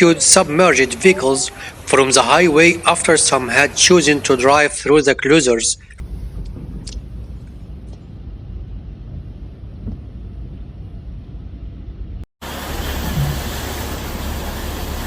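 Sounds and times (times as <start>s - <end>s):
heavy rain hiss: 0.0s - 4.3s, 12.4s - 15.0s
steady low rumble: 5.8s - 14.9s.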